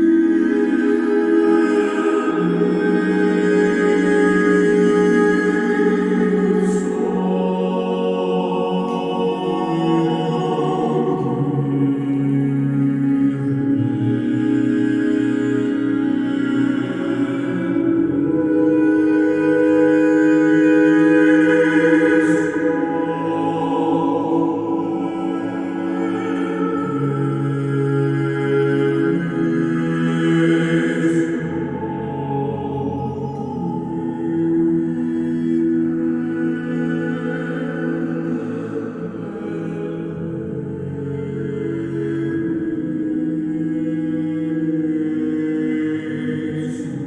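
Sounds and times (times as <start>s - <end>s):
ambient music with choir voices: 0.0s - 47.0s.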